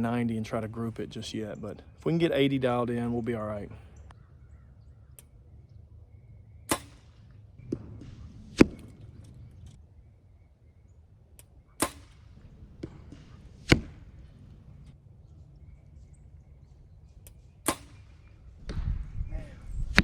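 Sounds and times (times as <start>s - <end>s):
wind rumble on microphone: 4.1s - 11.3s, 12.2s - 20.0s
bow release snap: 12.8s - 15.0s.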